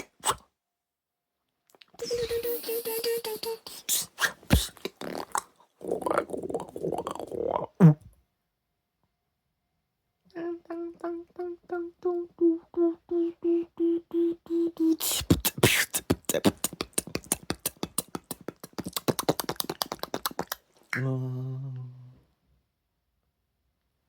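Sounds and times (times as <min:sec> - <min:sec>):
person beatboxing: 0:02.0 - 0:07.3, 0:10.4 - 0:21.8.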